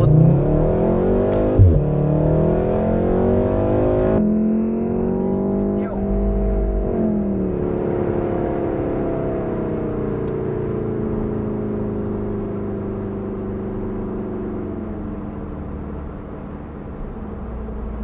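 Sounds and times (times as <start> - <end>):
car engine revs falling: 0.0 - 10.0
car engine shifting gear: 0.0 - 11.3.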